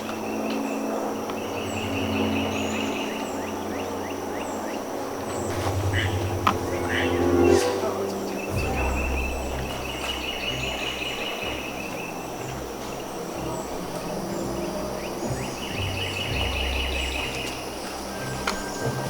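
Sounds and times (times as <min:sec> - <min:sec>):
background music with low notes: 0:00.0 - 0:19.0
outdoor ambience: 0:00.0 - 0:19.0
high buzzing trill: 0:05.4 - 0:17.5.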